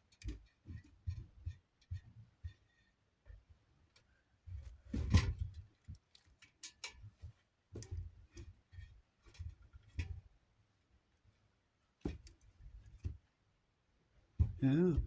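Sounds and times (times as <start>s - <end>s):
small parts clicking and knocking: 5.1s - 7.1s.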